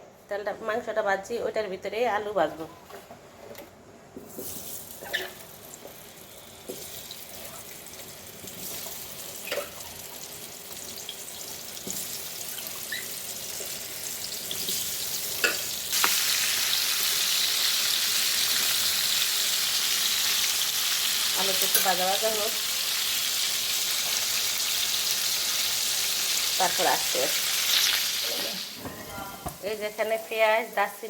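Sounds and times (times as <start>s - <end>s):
potatoes frying in hot oil: 4.8s - 28.8s.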